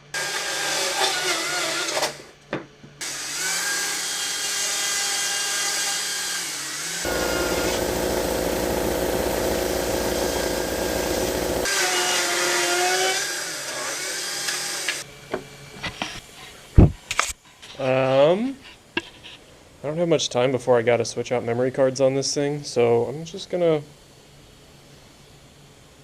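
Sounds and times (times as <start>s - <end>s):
power tool carving wood: 0.1s - 2.2s, 3.0s - 15.0s.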